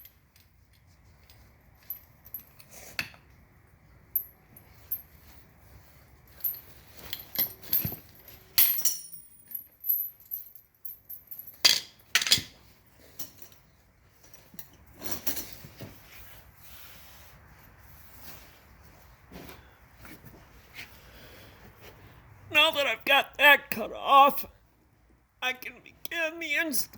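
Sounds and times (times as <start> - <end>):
chain links clinking and jangling: 0.0 - 3.0, 4.1 - 15.8.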